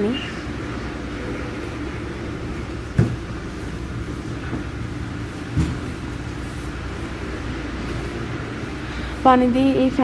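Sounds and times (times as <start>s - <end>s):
car wash machinery rumbling: 0.0s - 10.0s
dull thuds: 2.8s - 3.7s, 5.4s - 6.2s.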